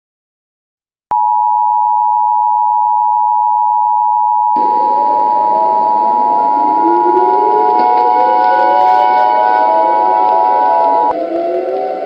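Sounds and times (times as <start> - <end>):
rushing hiss with rising tone: 4.6 - 12.0.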